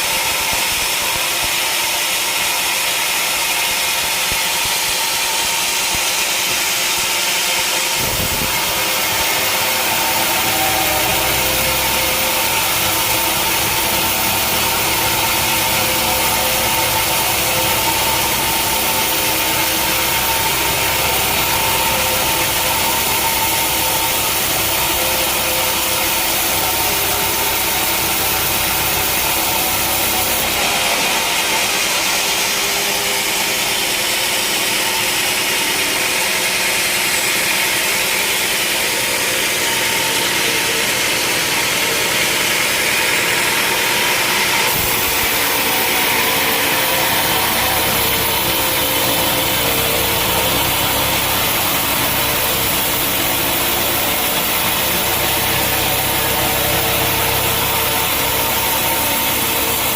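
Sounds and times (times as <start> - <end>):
sawmill saw cutting log: 0.0 - 59.9.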